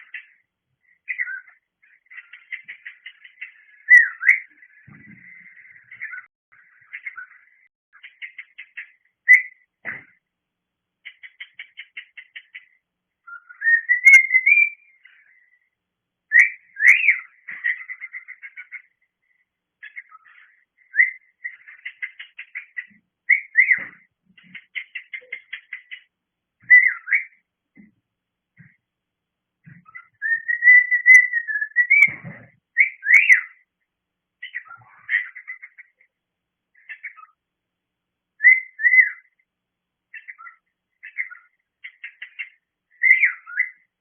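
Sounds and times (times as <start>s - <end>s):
cockatiel whistling and chirping: 1.1s - 4.6s, 9.3s - 9.6s, 13.3s - 15.0s, 16.3s - 18.7s, 19.8s - 24.0s, 26.6s - 27.4s, 29.8s - 32.2s, 32.8s - 33.6s, 38.4s - 39.3s, 40.2s - 43.8s.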